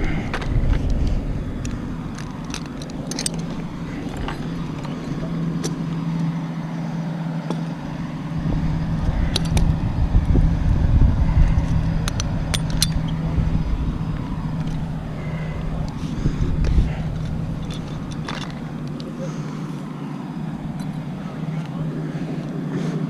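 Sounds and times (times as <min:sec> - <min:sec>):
large engine rumbling: 0:00.0 - 0:23.0
sharp metallic clinks: 0:01.6 - 0:06.7, 0:11.4 - 0:16.0, 0:20.6 - 0:21.2.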